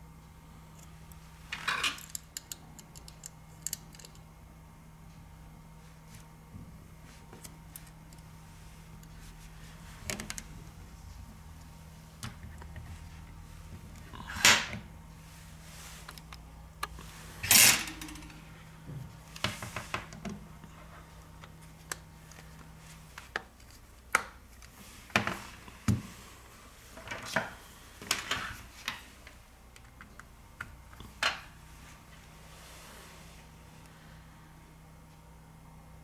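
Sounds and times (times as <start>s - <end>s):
faint steady hum: 0.0s - 36.0s
small tools clicking and tapping: 1.9s - 4.3s.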